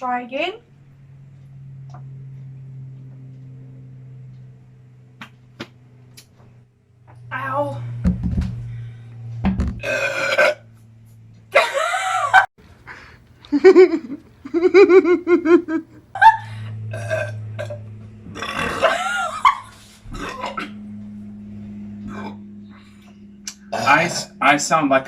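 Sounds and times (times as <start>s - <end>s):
loud drawn-out burps: 9.8s - 10.6s, 16.9s - 20.8s, 23.5s - 24.3s.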